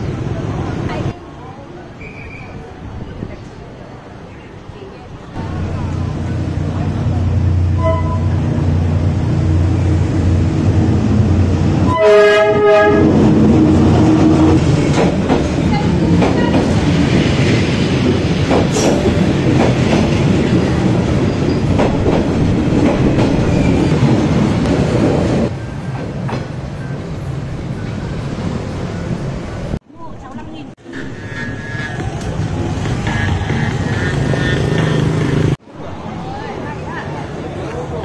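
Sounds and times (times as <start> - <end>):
train rumbling past: 0.0 - 38.0
train horn blast: 7.7 - 8.5, 11.8 - 14.6.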